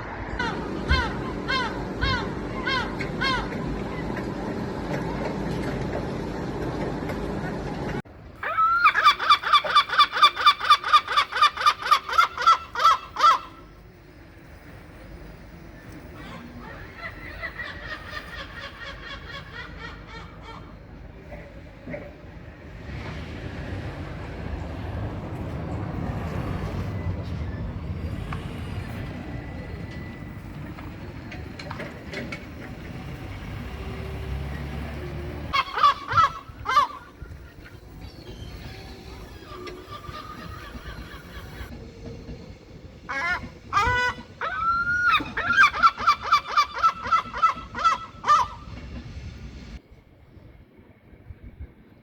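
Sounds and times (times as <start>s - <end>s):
gull calling: 0.4s - 4.1s, 8.4s - 13.8s, 16.1s - 41.7s, 43.1s - 48.8s
steady low rumble: 12.0s - 33.3s.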